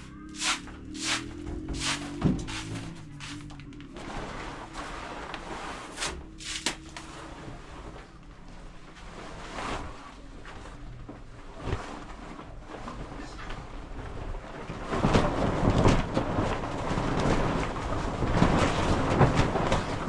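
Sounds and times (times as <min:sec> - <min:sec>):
steady rushing noise: 0:00.0 - 0:08.0.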